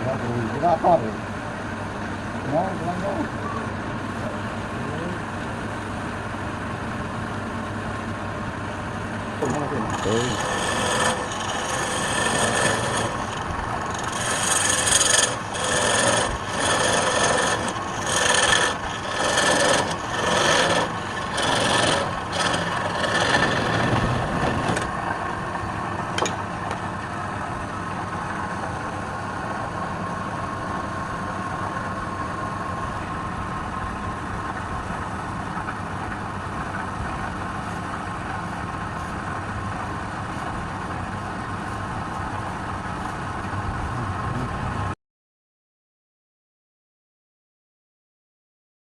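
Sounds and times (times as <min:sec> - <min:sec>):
wood lathe humming: 0:00.0 - 0:26.8, 0:36.4 - 0:45.0
tool rubbing spinning wood: 0:09.4 - 0:24.9, 0:36.5 - 0:45.0.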